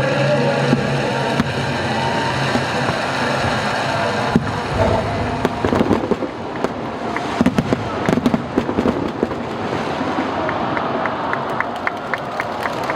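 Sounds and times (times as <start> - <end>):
steady background din: 0.0 - 10.9
crackling firework pops: 0.6 - 3.6, 4.3 - 10.6
firework bang: 0.6 - 10.7.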